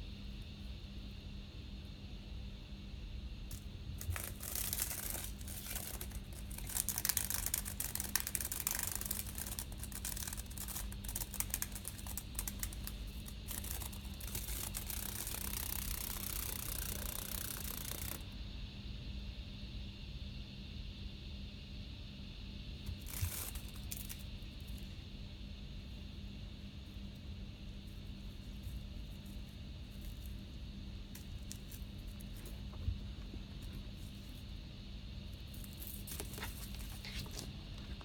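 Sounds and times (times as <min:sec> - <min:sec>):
low steady hum: 0:00.0 - 0:38.0
cicada buzzing: 0:04.0 - 0:18.2.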